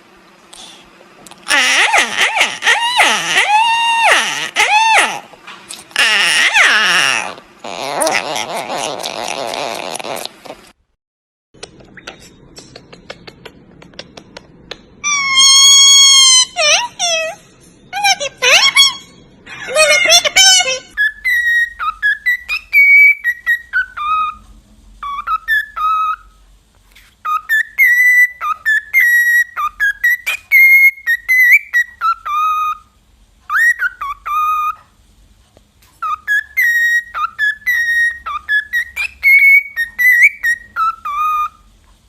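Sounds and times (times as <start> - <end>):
bird whistling: 20.0 - 24.4, 25.0 - 26.4, 27.2 - 32.9, 33.5 - 34.8, 36.0 - 41.7.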